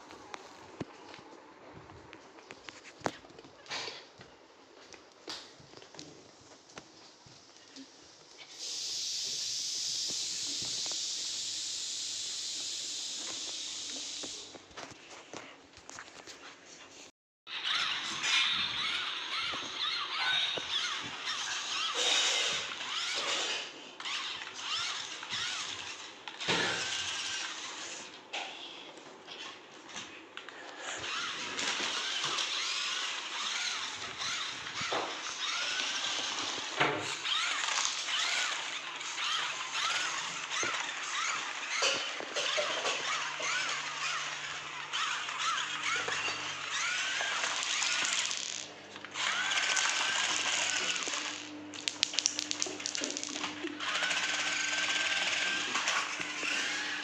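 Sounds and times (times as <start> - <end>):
tyres hissing: 8.5 - 14.6
radio-controlled car motor whine: 8.6 - 14.5, 17.5 - 28.2, 31.0 - 51.6, 52.5 - 57.0.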